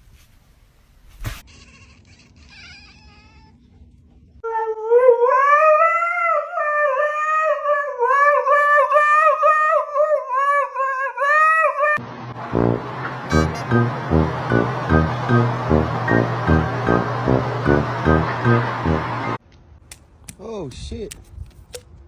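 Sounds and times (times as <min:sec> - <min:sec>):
dog howling: 0:04.4 - 0:12.0.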